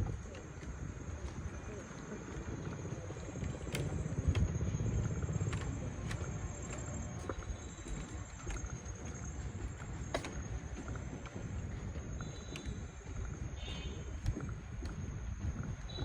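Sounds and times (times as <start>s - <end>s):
motor boat rumble: 0.0s - 16.0s
sharp clicks: 3.4s - 8.6s.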